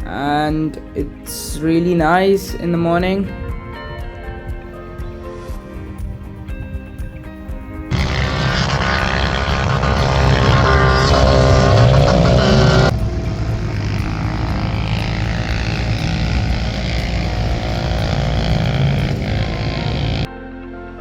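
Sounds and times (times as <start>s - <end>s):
vehicle engines running loudly: 7.8s - 20.3s.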